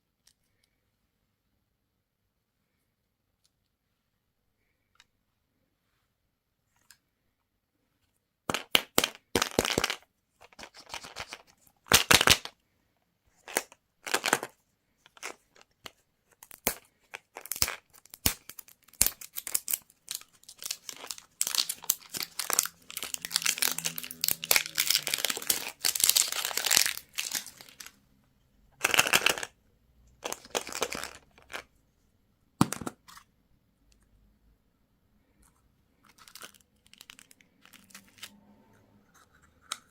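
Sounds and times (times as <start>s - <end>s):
candy wrappers crinkling: 16.4s - 28.0s, 28.8s - 29.6s, 30.2s - 31.7s, 36.0s - 38.3s.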